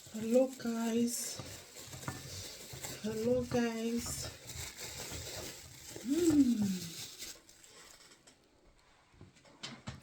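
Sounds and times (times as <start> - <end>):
person humming: 6.0 - 6.9.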